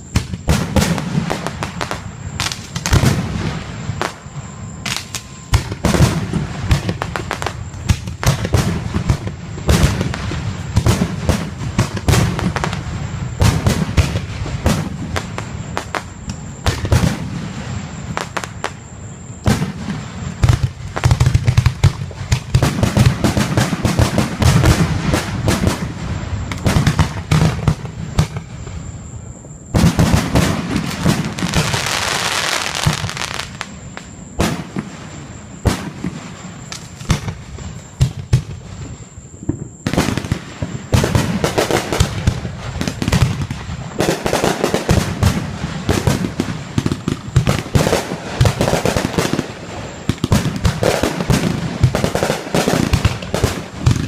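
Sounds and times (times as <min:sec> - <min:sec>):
fireworks crackling: 0:00.0 - 0:54.0
firework shells booming: 0:19.4 - 0:28.8, 0:29.7 - 0:54.0.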